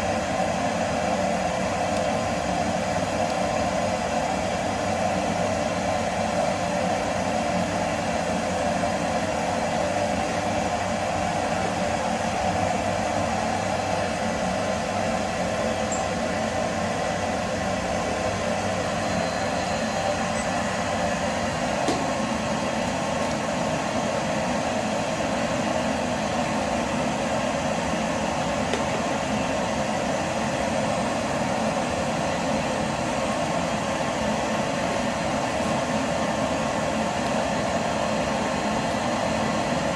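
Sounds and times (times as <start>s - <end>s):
vacuum cleaner motor running: 0.0s - 39.9s.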